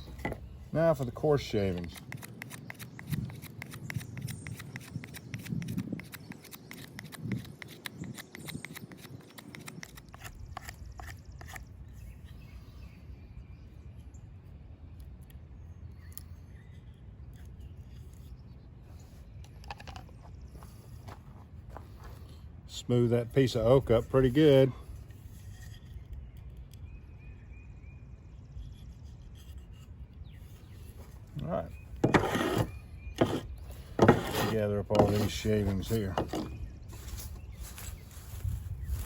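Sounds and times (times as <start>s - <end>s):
knife carving wood shavings: 1.0s - 11.7s, 31.8s - 38.1s.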